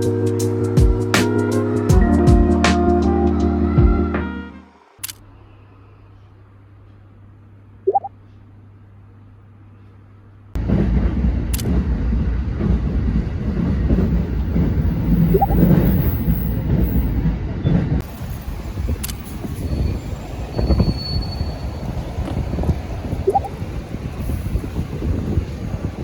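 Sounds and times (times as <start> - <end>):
vehicle rumbling and rattling: 10.5 - 26.0
short rising squeak: 20.6 - 21.8.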